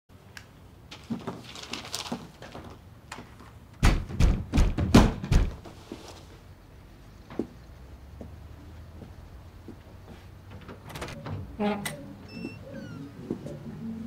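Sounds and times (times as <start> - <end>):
rustling: 0.9 - 3.6, 5.6 - 6.6
heavy thuds: 3.8 - 5.9.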